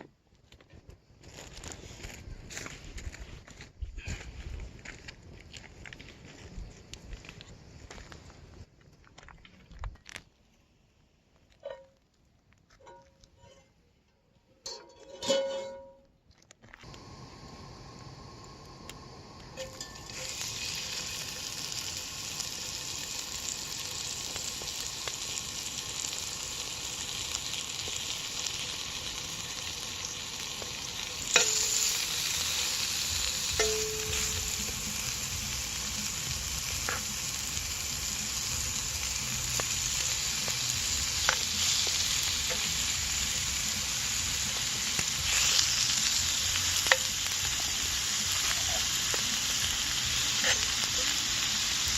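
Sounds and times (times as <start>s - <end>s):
food sizzling in a frying pan: 16.9s - 51.9s.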